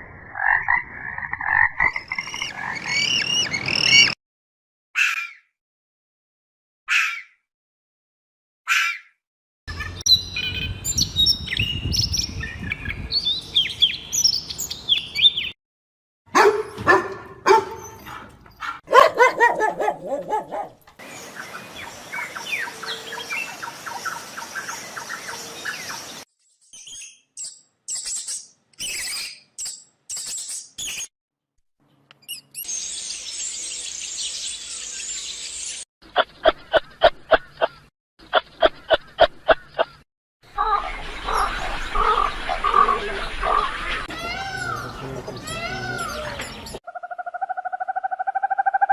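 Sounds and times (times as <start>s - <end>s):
bird chirping and calls: 2.0s - 4.2s, 19.4s - 31.1s, 40.6s - 48.9s.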